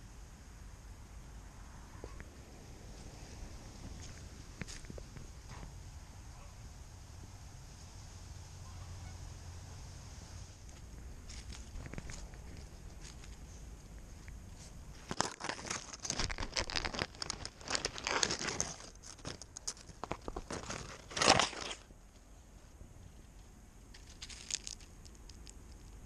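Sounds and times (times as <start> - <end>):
crinkling rustles: 10.6 - 26.0.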